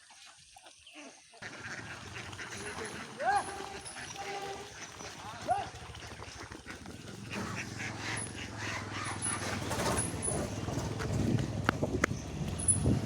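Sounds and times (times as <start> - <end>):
ducks calling: 1.0 - 13.0.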